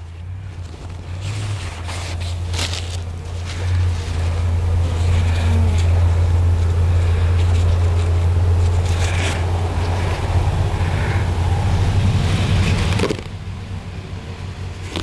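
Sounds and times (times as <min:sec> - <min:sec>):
rustling handling noises: 0:00.0 - 0:11.3
steady low hum: 0:00.0 - 0:15.0.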